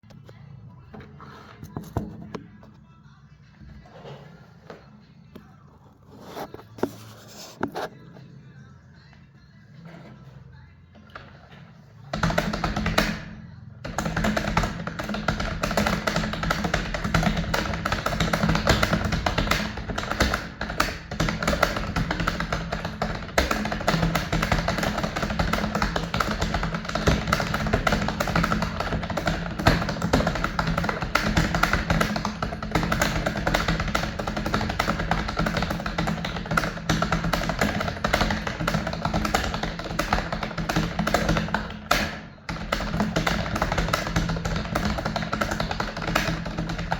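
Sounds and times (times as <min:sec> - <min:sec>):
rapid typing on keyboard: 0:12.1 - 0:46.9.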